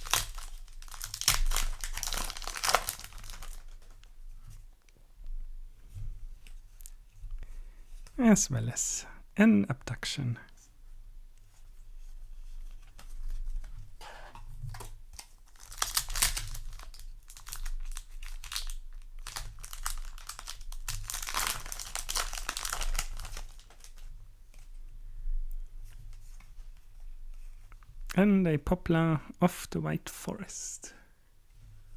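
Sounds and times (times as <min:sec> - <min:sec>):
plastic packaging crinkling and tearing: 0:00.0 - 0:04.0, 0:14.6 - 0:24.1.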